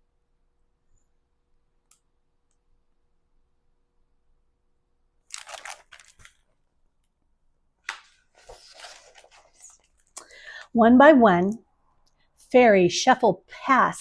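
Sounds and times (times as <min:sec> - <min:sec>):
click: 0:01.8 - 0:02.6
paper page rustling: 0:05.3 - 0:06.5, 0:07.9 - 0:10.1.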